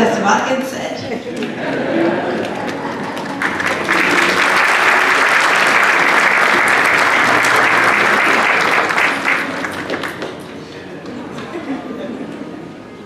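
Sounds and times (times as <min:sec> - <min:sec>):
congregation applauding: 0:01.3 - 0:10.7.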